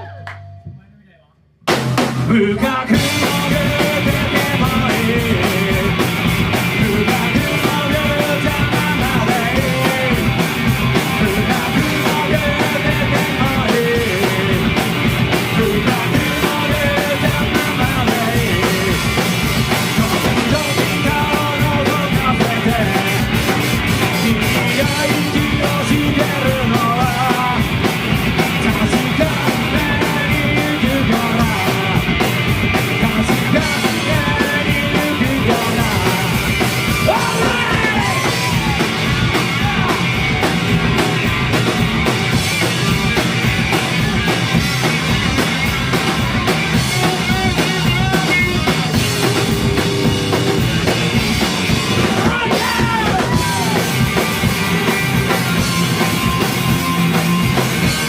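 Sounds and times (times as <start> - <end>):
bass guitar: 0.0 - 58.0
drum kit: 0.0 - 58.0
electric guitars: 1.9 - 58.0.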